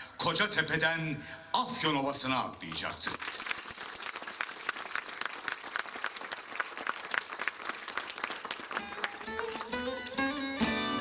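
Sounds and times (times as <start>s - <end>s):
audience applauding: 2.6s - 10.6s
plucked-string music: 8.8s - 11.0s.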